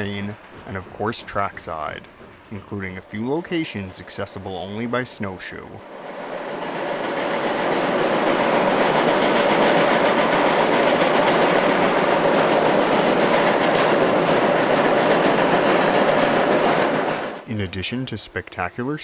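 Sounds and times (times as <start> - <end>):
snowplow train rushing noise: 0.0 - 19.0
faint held tone: 17.5 - 19.0.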